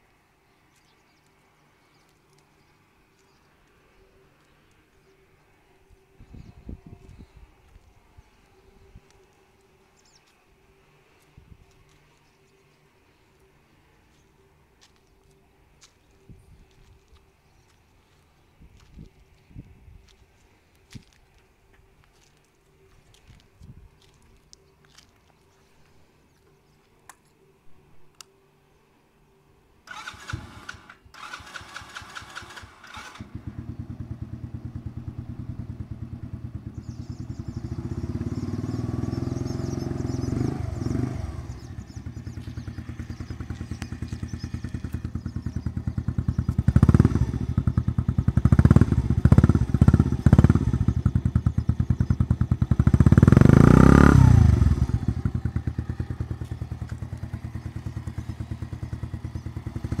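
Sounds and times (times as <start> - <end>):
motorcycle engine starter cranking: 29.9 - 33.4
motorcycle engine idling and revving: 29.9 - 60.0.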